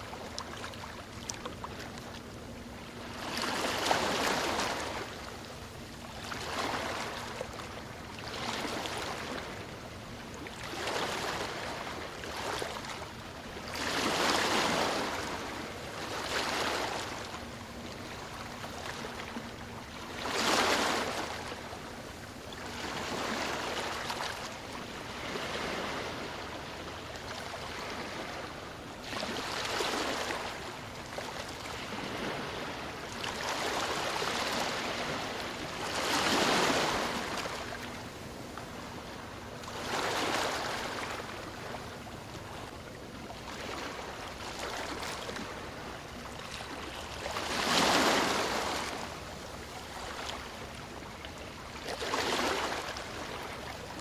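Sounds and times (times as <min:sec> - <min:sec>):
ocean waves breaking on shore: 0:00.0 - 0:54.0.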